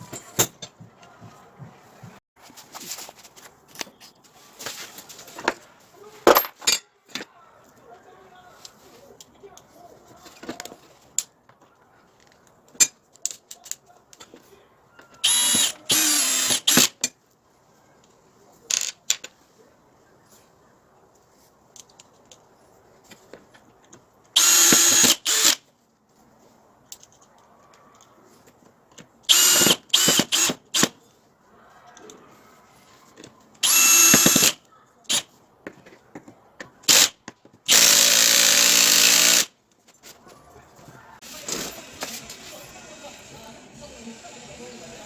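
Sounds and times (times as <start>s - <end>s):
power tool motor bursts: 15.2s - 16.9s, 24.4s - 25.6s, 29.3s - 30.9s, 33.6s - 35.2s, 37.7s - 39.5s.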